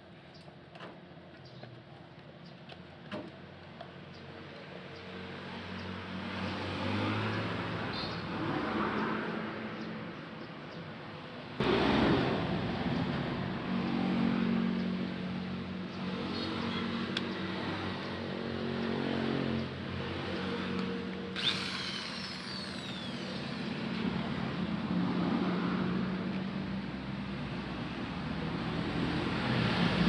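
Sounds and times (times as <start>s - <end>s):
power tool motor running: 21.3s - 24.1s.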